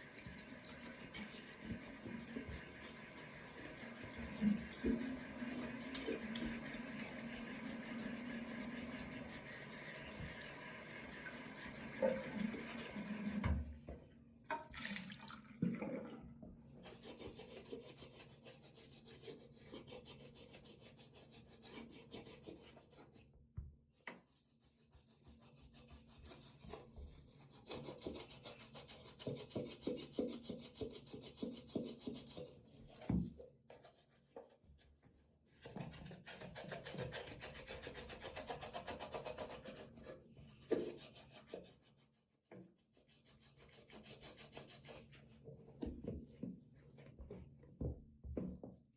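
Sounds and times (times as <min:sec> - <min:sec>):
running tap water: 0:00.0 - 0:13.7, 0:14.5 - 0:16.2
brush scrubbing a sneaker: 0:00.7 - 0:13.1, 0:16.8 - 0:23.3, 0:24.0 - 0:45.4.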